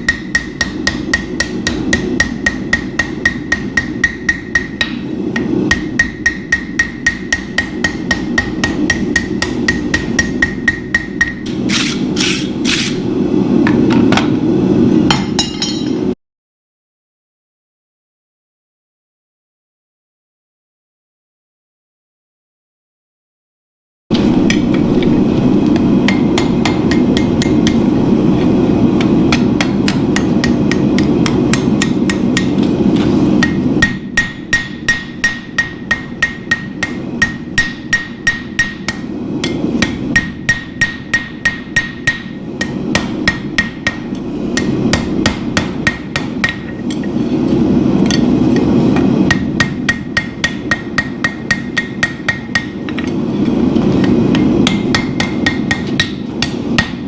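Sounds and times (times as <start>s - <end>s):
hammer striking steel on anvil: 0.0s - 13.1s, 15.1s - 16.1s, 25.8s - 27.9s, 29.0s - 47.2s, 48.0s - 57.0s.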